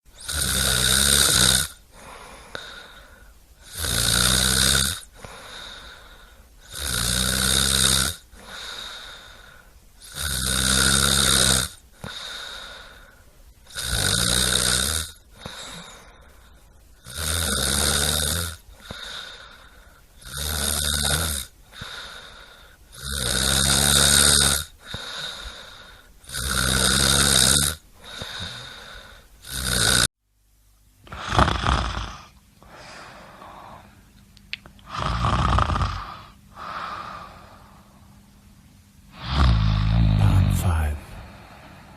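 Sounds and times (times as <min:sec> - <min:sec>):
loud snoring: 0:00.2 - 0:01.8, 0:03.6 - 0:05.2, 0:06.7 - 0:08.9, 0:10.0 - 0:12.2, 0:13.7 - 0:15.9, 0:17.0 - 0:19.3, 0:20.2 - 0:22.1, 0:22.9 - 0:25.5, 0:26.2 - 0:30.1, 0:31.1 - 0:32.4, 0:34.8 - 0:36.8, 0:39.1 - 0:41.4
soft breathing: 0:01.9 - 0:03.4, 0:05.1 - 0:06.6, 0:08.3 - 0:09.8, 0:12.0 - 0:13.4, 0:15.3 - 0:16.8, 0:32.2 - 0:34.2, 0:36.0 - 0:38.4, 0:39.2 - 0:41.9.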